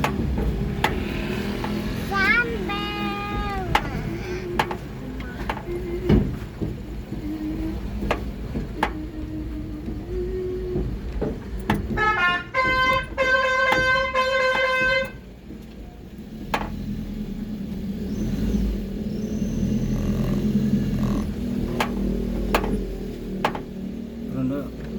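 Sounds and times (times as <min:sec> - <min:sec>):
musical horn tones: 0:11.9 - 0:15.2.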